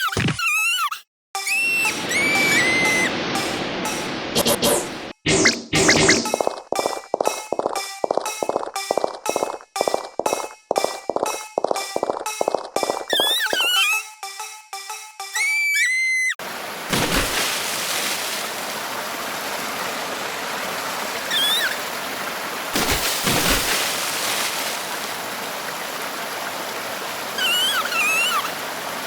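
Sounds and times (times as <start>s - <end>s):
high squeaky chirps: 0.0s - 3.2s, 11.8s - 14.1s, 15.3s - 16.4s, 21.3s - 21.8s, 27.4s - 28.6s
steady rushing noise: 1.9s - 5.2s.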